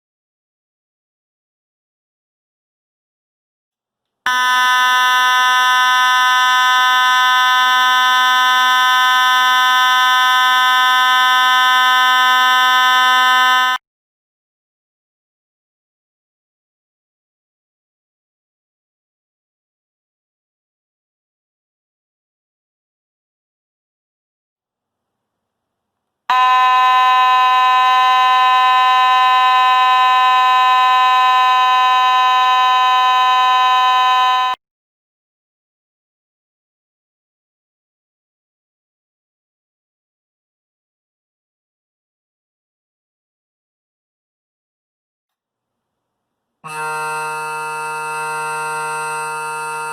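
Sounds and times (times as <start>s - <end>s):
fire alarm horn buzzing: 4.3s - 13.8s, 26.3s - 34.6s, 46.6s - 49.9s.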